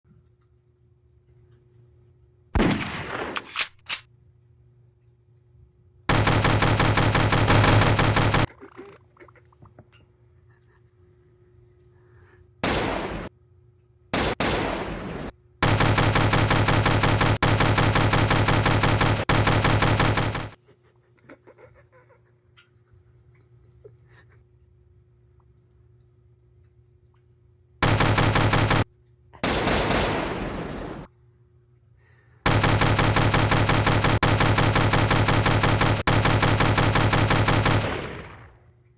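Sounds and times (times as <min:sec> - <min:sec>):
machine-gun fire: 0:02.6 - 0:03.9, 0:06.1 - 0:08.5, 0:12.6 - 0:13.3, 0:14.1 - 0:20.6, 0:27.8 - 0:31.1, 0:32.4 - 0:38.6
gunshot bursts: 0:02.6 - 0:04.0, 0:06.1 - 0:08.5, 0:12.6 - 0:13.3, 0:14.2 - 0:20.6, 0:27.8 - 0:31.1, 0:32.5 - 0:38.6.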